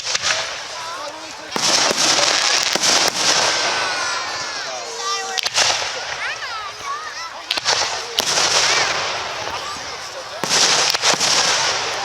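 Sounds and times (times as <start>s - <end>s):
firework shells cracking: 0.0s - 12.0s
firework whistles: 0.0s - 12.0s.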